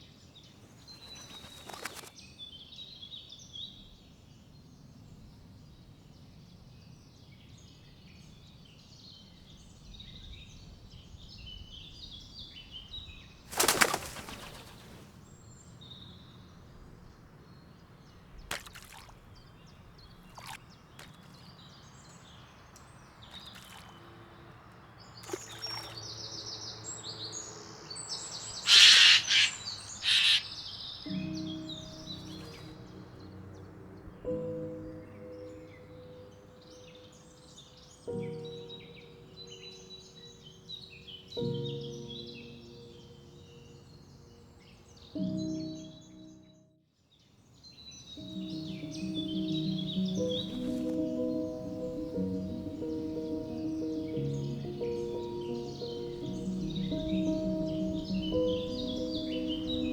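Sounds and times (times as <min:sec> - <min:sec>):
small birds chirping: 0:00.0 - 0:46.6, 0:47.4 - 0:59.9
wing flapping: 0:00.8 - 0:02.2, 0:13.5 - 0:15.2, 0:28.7 - 0:30.5, 0:32.2 - 0:32.8.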